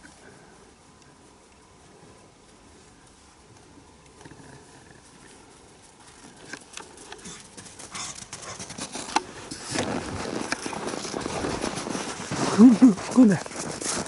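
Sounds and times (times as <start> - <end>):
dog paws pattering: 5.2 - 14.0.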